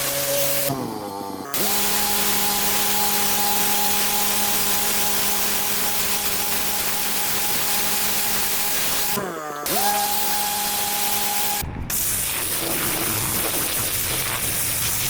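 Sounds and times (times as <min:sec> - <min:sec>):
pressure washer machine note: 0:00.0 - 0:15.0
water jet hissing on paving: 0:10.2 - 0:15.0.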